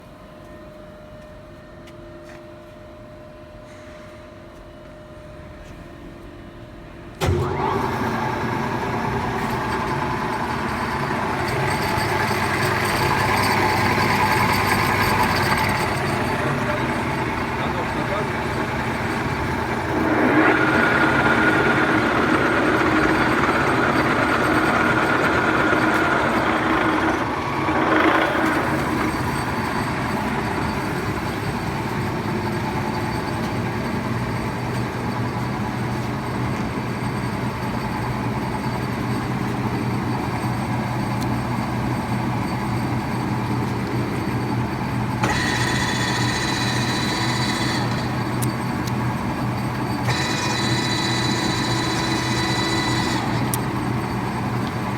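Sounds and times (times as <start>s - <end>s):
lathe running with gear whine: 7.2s - 54.9s
higher whine: 8.4s - 36.8s.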